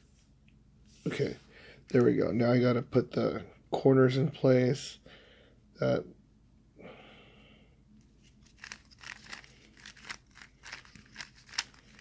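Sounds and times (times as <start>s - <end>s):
speed cube clicking: 8.6s - 12.0s.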